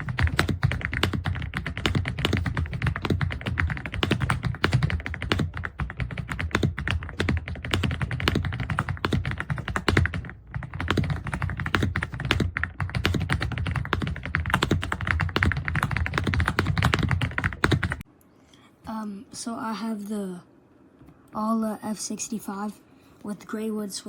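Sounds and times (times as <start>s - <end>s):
mechanical keyboard typing clacks: 0.0s - 18.0s.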